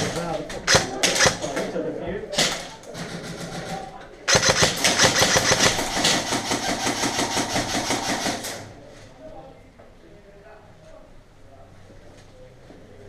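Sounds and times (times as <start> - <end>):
airsoft gun full-auto rattle: 0.0 - 1.5, 4.3 - 8.6.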